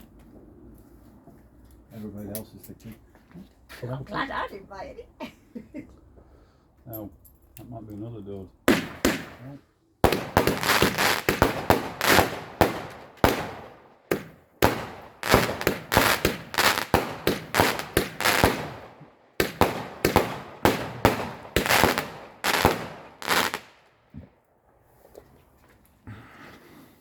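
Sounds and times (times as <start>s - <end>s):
fireworks bangs: 8.7s - 23.9s.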